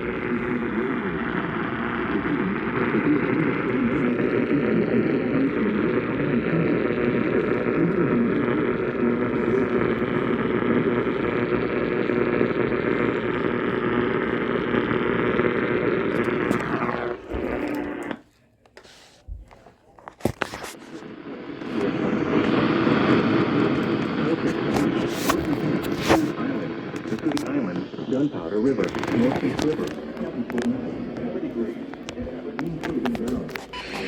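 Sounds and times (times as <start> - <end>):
faint voice: 0.0 - 14.7
radio static and hiss: 0.0 - 34.0.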